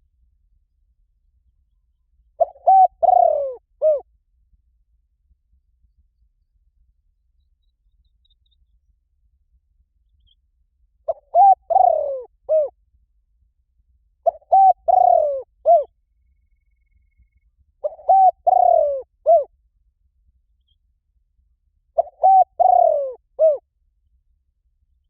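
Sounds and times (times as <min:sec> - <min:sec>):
dove cooing: 0:02.4 - 0:04.0, 0:11.1 - 0:12.8, 0:14.2 - 0:15.9, 0:17.8 - 0:19.5, 0:22.0 - 0:23.6.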